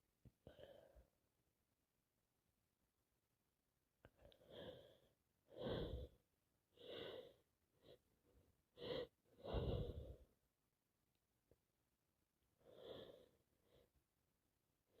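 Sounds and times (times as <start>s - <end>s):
woman breathing through congested nose: 4.2s - 8.1s, 8.7s - 10.4s, 12.6s - 13.9s.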